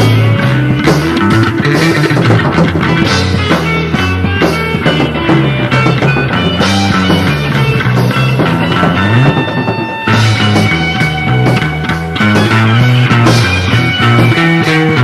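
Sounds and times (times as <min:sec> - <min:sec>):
bass guitar: 0:00.0 - 0:15.0
drums: 0:00.0 - 0:15.0
electric guitar: 0:00.0 - 0:15.0.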